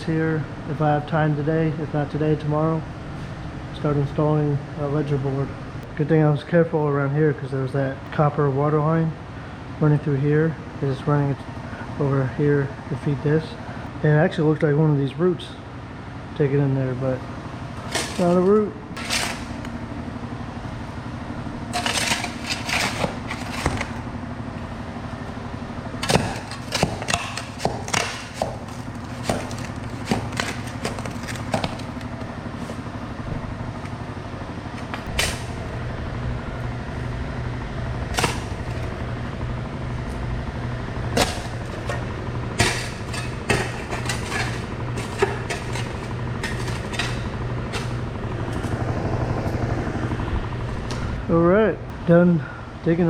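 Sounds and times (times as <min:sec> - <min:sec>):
steady low hum: 0:00.0 - 0:53.0
shovel scraping soil and gravel: 0:17.7 - 0:19.8, 0:21.7 - 0:24.0, 0:26.0 - 0:32.9, 0:41.1 - 0:48.0.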